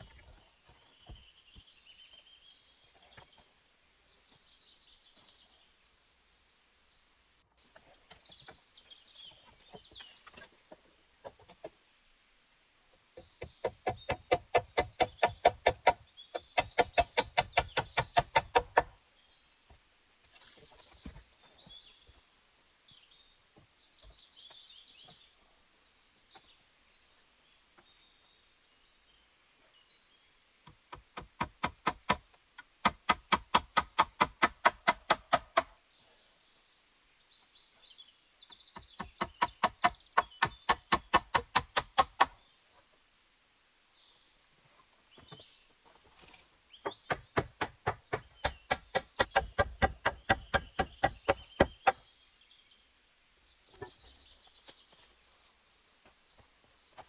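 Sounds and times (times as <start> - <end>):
birds chirping faintly: 0.0 - 57.0
rapid evenly spaced knocks: 13.4 - 18.9, 32.8 - 35.7, 38.9 - 42.4, 46.9 - 52.0.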